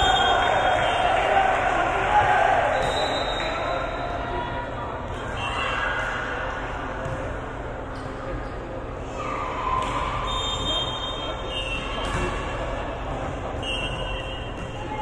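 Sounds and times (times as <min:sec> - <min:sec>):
voices echoing in a hall: 0:00.0 - 0:15.0
ball bouncing: 0:07.0 - 0:08.1, 0:11.8 - 0:15.0.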